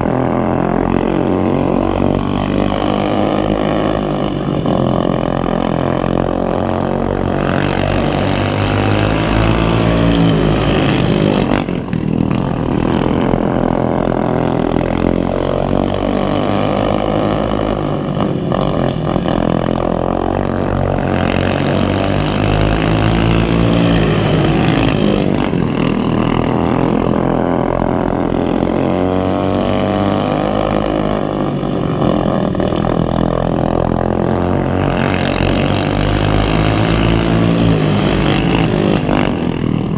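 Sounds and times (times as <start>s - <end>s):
racing lawnmower engines: 0.0s - 39.9s.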